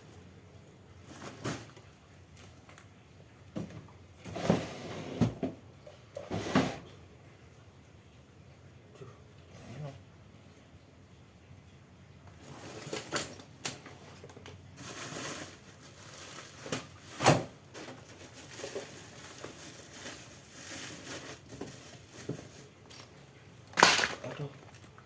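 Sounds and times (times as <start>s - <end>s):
rustling: 12.4s - 23.1s
clicks and knocks of handled parts: 22.4s - 25.0s.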